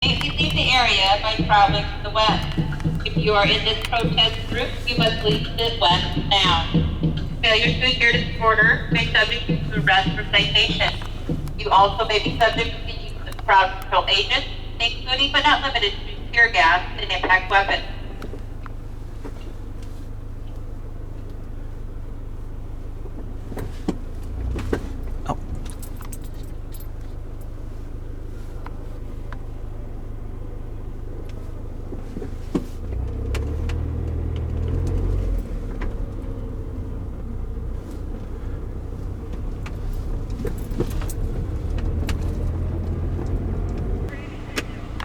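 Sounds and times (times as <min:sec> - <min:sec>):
car cabin engine and road rumble: 0:00.0 - 0:45.0
keys rattling: 0:25.5 - 0:27.1.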